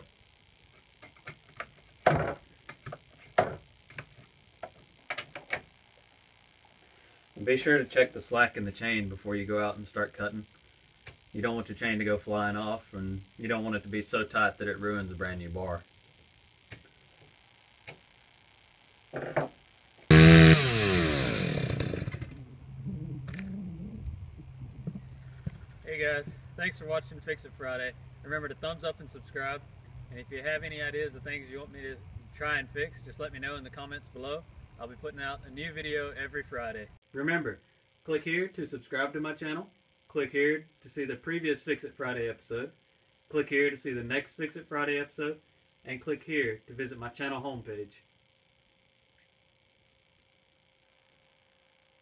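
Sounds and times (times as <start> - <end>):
chainsaw starter rasp: 20.1 - 22.4
chainsaw engine revving and idling: 20.1 - 22.9.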